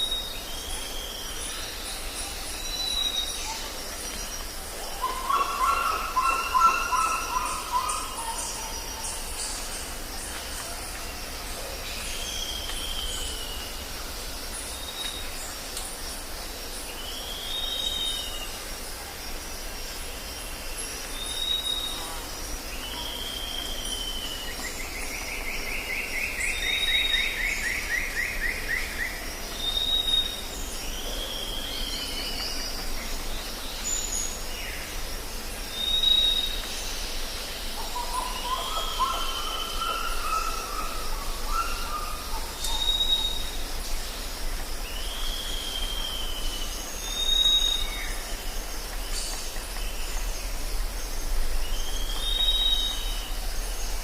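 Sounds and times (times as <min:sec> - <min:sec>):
birds calling: 0:03.1 - 0:10.6
low warbling bird call: 0:05.0 - 0:09.2.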